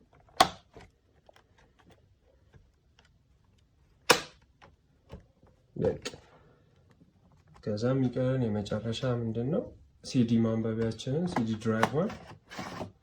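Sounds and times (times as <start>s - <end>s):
plastic clips snapping into place: 0.3s - 0.9s, 4.0s - 5.2s.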